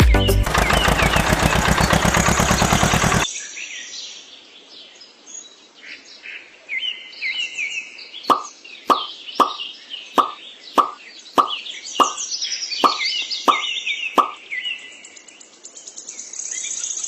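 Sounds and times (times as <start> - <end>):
loud music: 0.0 - 0.5
birds chirping: 0.0 - 3.3, 8.2 - 15.3
plop: 8.3 - 9.6, 10.2 - 12.2, 12.8 - 13.6.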